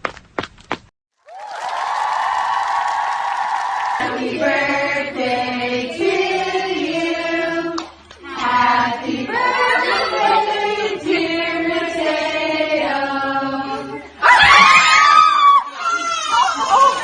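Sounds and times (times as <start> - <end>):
choir singing long notes: 3.4 - 14.1.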